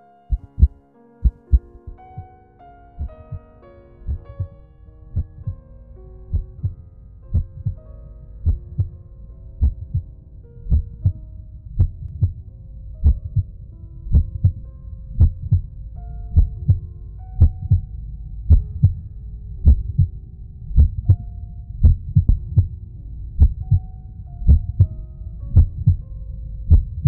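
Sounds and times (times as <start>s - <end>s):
heartbeat thumps: 7.3s - 7.8s, 8.4s - 8.9s, 9.6s - 10.0s, 10.7s - 11.2s, 11.8s - 12.4s, 13.0s - 13.5s, 14.1s - 14.6s, 15.2s - 15.7s, 16.3s - 16.8s, 17.4s - 17.9s, 18.5s - 19.0s, 19.6s - 20.1s, 20.7s - 21.2s, 21.8s - 22.8s, 23.4s - 25.0s, 25.6s - 26.0s, 26.7s - 27.0s.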